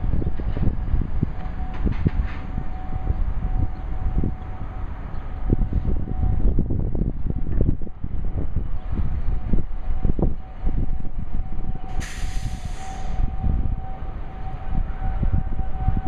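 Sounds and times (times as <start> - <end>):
distant warning siren: 0.0 - 16.0
wind buffeting microphone: 0.0 - 16.0
sharp hiss: 12.0 - 13.2.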